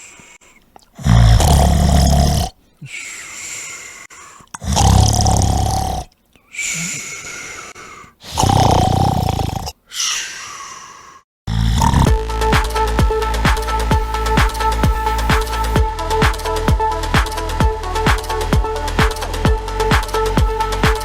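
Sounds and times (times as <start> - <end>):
man snoring: 1.0 - 2.5, 4.6 - 6.1, 8.2 - 9.8, 11.5 - 12.2.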